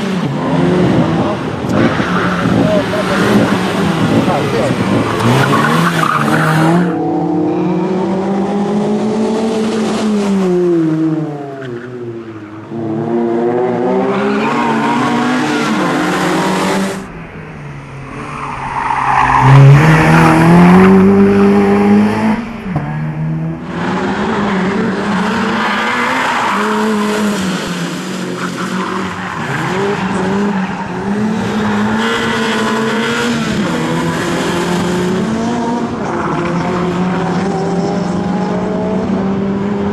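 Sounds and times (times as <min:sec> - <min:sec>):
car engine revving: 0:12.7 - 0:39.9.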